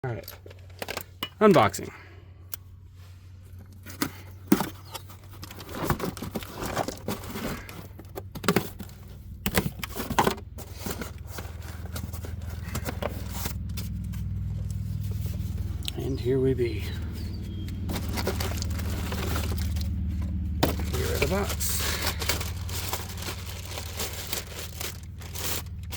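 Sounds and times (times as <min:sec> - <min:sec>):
low steady hum: 0:00.1 - 0:25.9
cardboard packaging tearing and crinkling: 0:04.5 - 0:15.6, 0:17.9 - 0:25.9.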